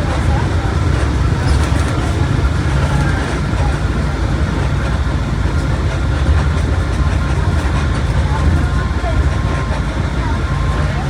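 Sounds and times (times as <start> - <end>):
bus diesel engine drone: 0.0 - 11.0.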